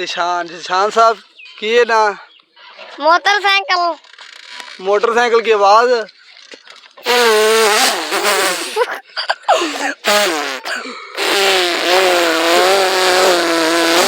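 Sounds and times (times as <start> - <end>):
boy making motorcycle noises: 10.0 - 14.0.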